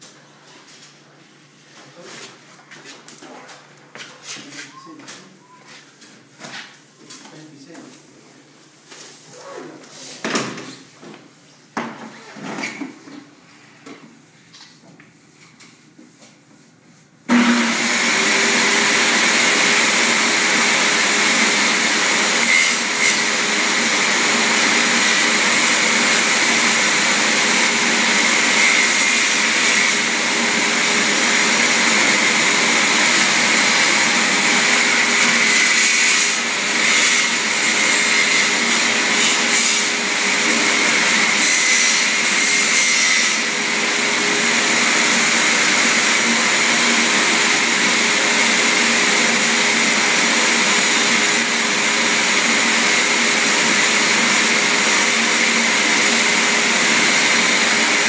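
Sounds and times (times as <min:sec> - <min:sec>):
electric tool motor running: 0:17.3 - 0:58.0.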